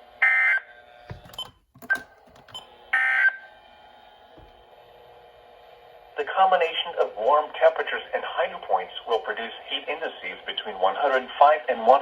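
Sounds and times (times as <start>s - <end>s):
radio background hiss: 6.2s - 12.0s.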